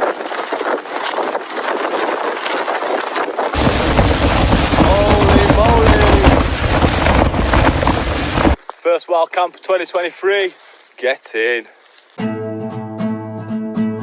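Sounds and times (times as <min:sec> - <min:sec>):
wind gusts battering microphone: 0:00.0 - 0:08.6
storm wind: 0:03.4 - 0:08.6
rain hissing: 0:03.6 - 0:08.6.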